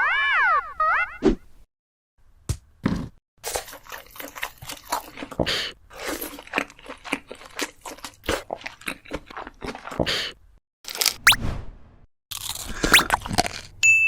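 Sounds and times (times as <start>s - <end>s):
crunchy chewing and biting: 6.1s - 10.0s.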